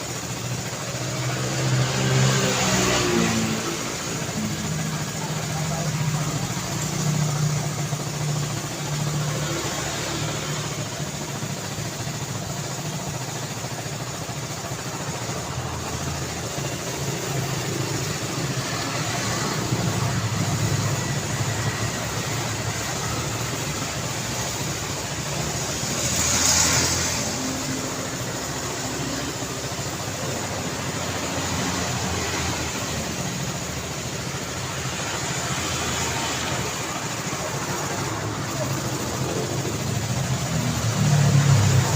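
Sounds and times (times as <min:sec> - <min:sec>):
vehicle passing close: 0:00.0 - 0:12.3, 0:13.3 - 0:41.9
road traffic: 0:00.0 - 0:41.9.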